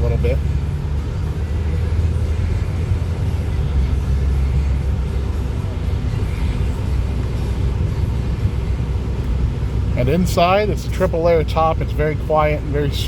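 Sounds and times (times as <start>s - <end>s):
car engine and road noise: 0.0s - 13.0s.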